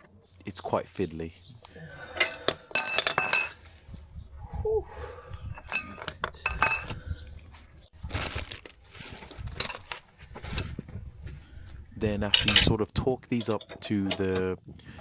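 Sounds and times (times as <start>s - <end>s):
metal tools clinking: 2.0s - 4.1s, 5.5s - 7.4s, 9.5s - 10.7s
scraping rustle: 7.4s - 11.6s.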